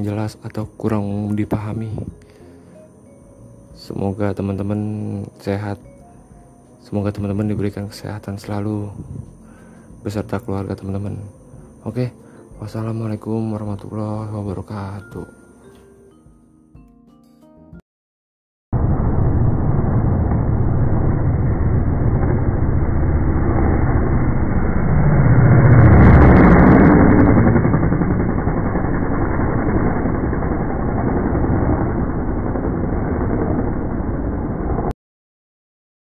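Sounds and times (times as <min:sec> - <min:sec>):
motor vehicle rumble: 0:18.8 - 0:34.9.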